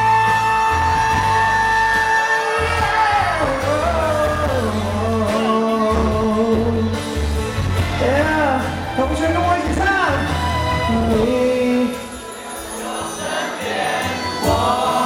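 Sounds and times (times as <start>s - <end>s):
faint audience yelling: 0.0s - 5.8s
live pop band playing: 0.0s - 15.0s.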